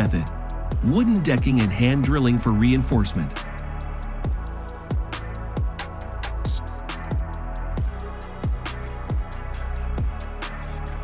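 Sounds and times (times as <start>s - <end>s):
deep kick drum: 0.0s - 2.3s, 4.2s - 9.4s.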